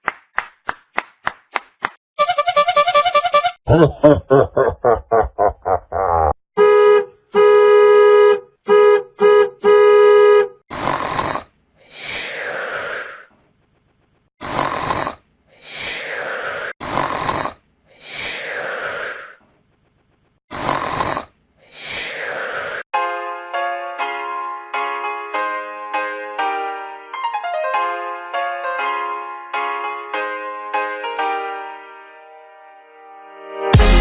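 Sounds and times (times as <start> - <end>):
horn honks: 2.2 - 3.6, 6.6 - 10.6
cartoon snore: 10.7 - 13.3, 14.4 - 19.4, 20.5 - 22.8.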